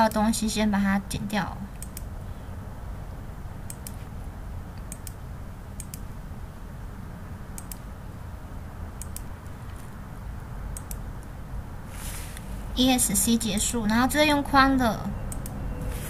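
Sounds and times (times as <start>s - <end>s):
steady low hum: 0.0s - 16.0s
computer mouse clicking: 1.7s - 2.1s, 3.7s - 4.1s, 4.8s - 5.2s, 5.8s - 6.1s, 7.6s - 7.9s, 9.0s - 9.9s, 10.7s - 11.0s, 15.3s - 15.6s.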